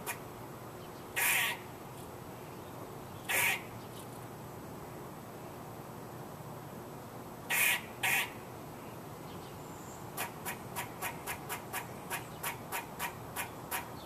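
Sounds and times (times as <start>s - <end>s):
squirrel harsh call: 1.1s - 1.7s, 3.2s - 3.8s, 7.5s - 8.5s, 10.1s - 14.0s.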